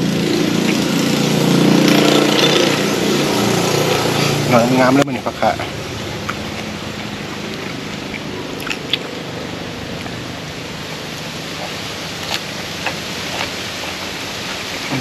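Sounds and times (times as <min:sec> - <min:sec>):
steady background hiss: 0:00.0 - 0:15.0
person eating: 0:05.5 - 0:15.0.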